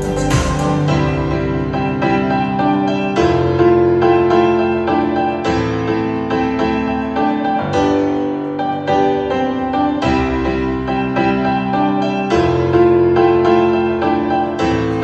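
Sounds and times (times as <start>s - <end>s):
piano music from speaker: 0.0s - 15.0s.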